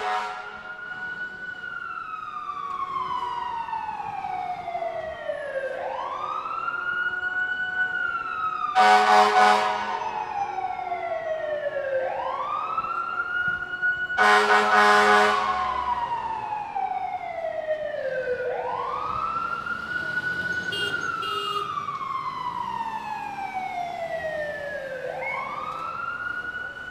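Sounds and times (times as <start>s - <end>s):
loud horn blast: 0.0s - 0.7s, 8.8s - 10.0s, 14.2s - 15.7s, 20.7s - 21.7s
fire truck siren wailing: 0.0s - 26.9s.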